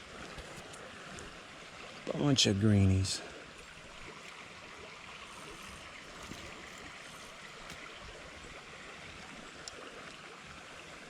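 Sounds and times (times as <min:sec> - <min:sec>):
creek water running: 0:00.0 - 0:11.0
faint ticks: 0:09.6 - 0:10.2.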